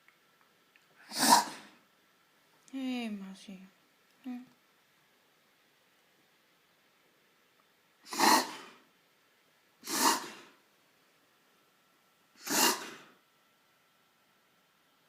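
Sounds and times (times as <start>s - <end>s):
dog snorting through nose: 1.0s - 1.8s, 8.1s - 8.8s, 9.8s - 10.6s, 12.4s - 13.2s.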